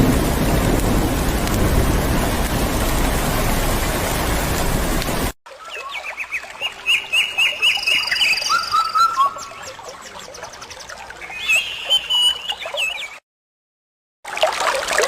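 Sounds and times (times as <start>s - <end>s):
high bird trill: 5.6s - 13.2s
repeated bird chirps: 5.6s - 13.2s
whistled bird notes: 5.6s - 13.2s.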